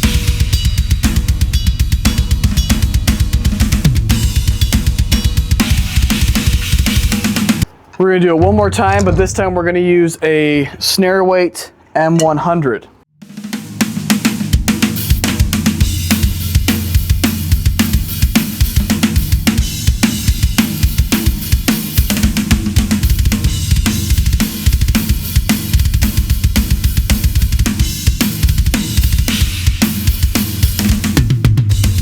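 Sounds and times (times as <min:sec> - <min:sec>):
bass drum: 0:08.4 - 0:09.8, 0:14.4 - 0:20.0, 0:28.5 - 0:32.0.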